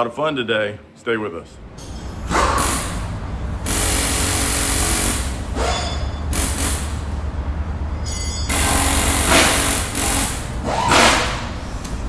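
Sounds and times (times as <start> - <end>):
steady low rumble: 1.6 - 10.7
power tool running: 2.2 - 7.9, 8.5 - 11.6.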